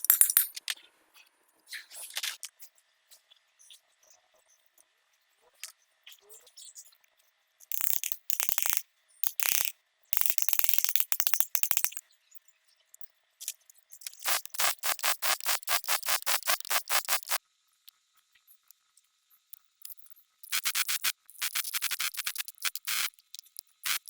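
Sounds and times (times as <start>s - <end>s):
hand tools clicking on metal: 0.0s - 0.7s, 7.7s - 12.0s.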